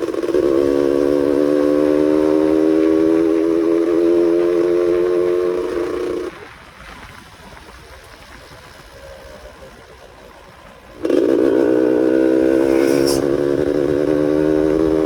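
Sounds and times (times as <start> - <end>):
two-stroke engine droning: 0.0 - 6.3, 10.9 - 15.0
low hiss: 12.2 - 14.1.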